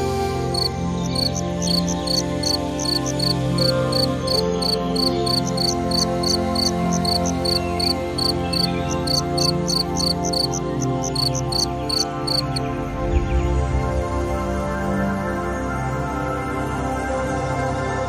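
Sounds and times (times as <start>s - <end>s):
ambient music drone: 0.0s - 18.0s
insect chirping: 0.4s - 12.6s.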